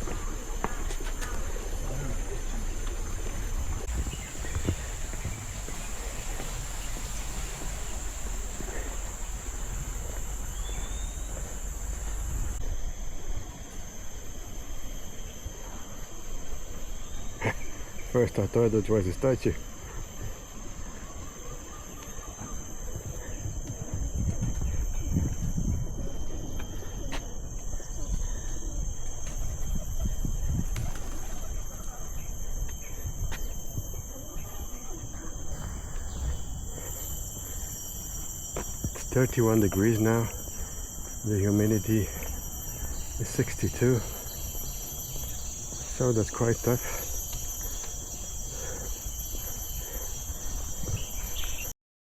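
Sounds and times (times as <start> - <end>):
low rumble on microphone: 0.0 - 13.1, 22.8 - 39.2
insects droning: 0.0 - 51.8
low rumble: 2.2 - 12.6.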